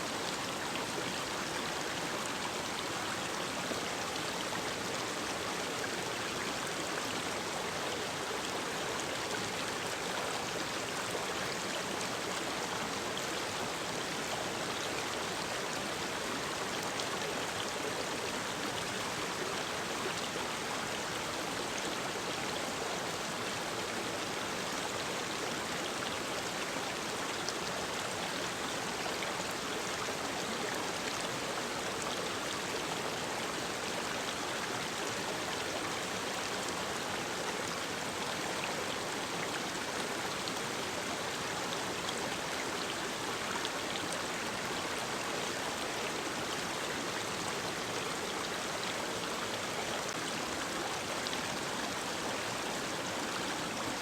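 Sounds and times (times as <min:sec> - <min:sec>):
stream flowing over rocks: 0:00.0 - 0:54.0.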